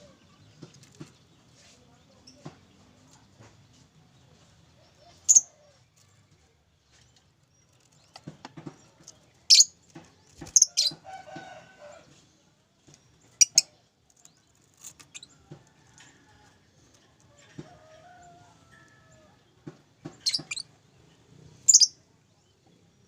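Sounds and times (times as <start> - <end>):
lovebird chirping: 21.7 - 22.0.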